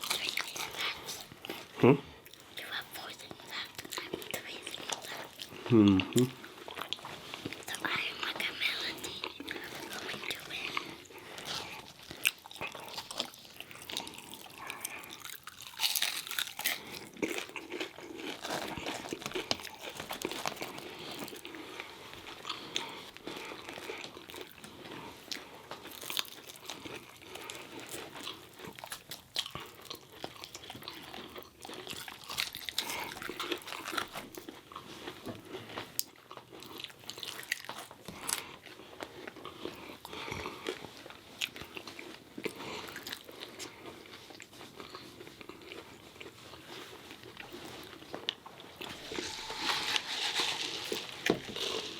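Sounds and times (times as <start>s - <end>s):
mouth noises: 1.7s - 2.2s, 5.6s - 6.4s
crunchy biting and chewing: 9.0s - 51.9s.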